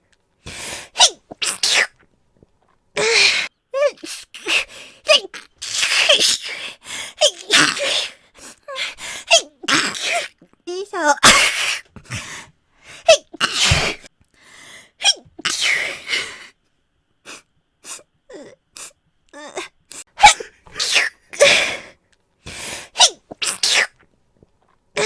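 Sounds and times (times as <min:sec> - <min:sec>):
woman sneezing: 0:01.0 - 0:01.9, 0:03.0 - 0:06.6, 0:07.2 - 0:08.2, 0:09.2 - 0:10.4, 0:11.0 - 0:11.9, 0:13.0 - 0:14.1, 0:15.0 - 0:16.4, 0:20.0 - 0:21.9, 0:23.0 - 0:24.0.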